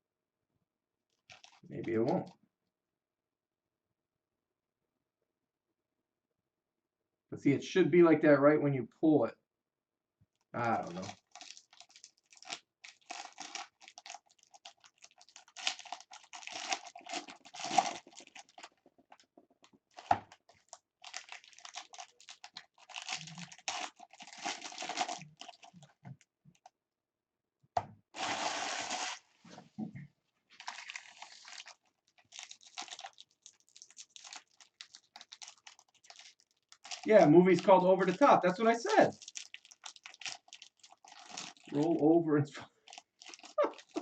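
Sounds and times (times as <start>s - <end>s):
wrappers crinkling and tearing: 1.2s - 2.3s, 10.6s - 19.3s, 19.9s - 26.0s, 28.2s - 29.3s, 30.5s - 42.0s, 42.8s - 44.0s.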